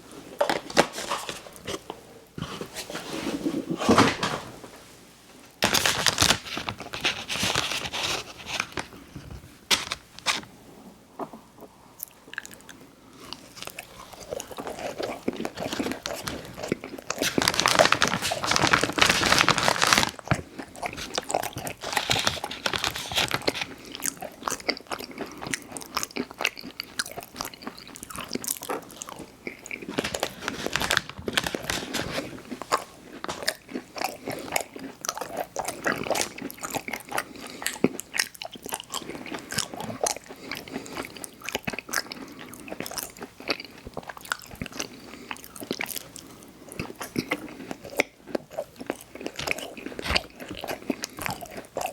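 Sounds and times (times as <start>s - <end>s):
chewing with crunching clicks: 12.0s - 17.4s, 20.2s - 30.6s, 31.5s - 51.9s.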